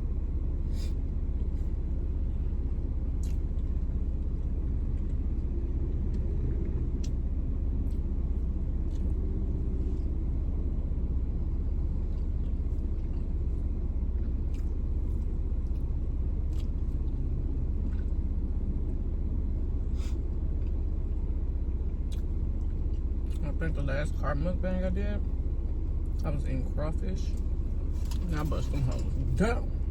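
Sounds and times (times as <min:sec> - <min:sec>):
steady low rumble: 0:00.0 - 0:29.9
chewing mouth clicks and smacks: 0:03.2 - 0:03.7, 0:07.8 - 0:08.1, 0:14.2 - 0:15.9, 0:16.5 - 0:17.1, 0:22.1 - 0:23.4.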